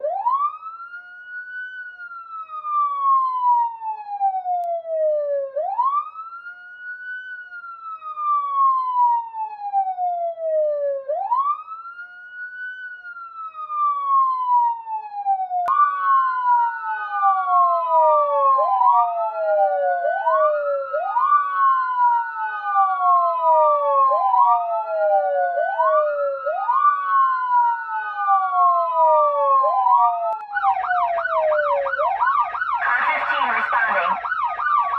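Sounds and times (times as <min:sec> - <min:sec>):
police siren wailing: 0:00.0 - 0:34.9
second siren wail: 0:00.0 - 0:34.9.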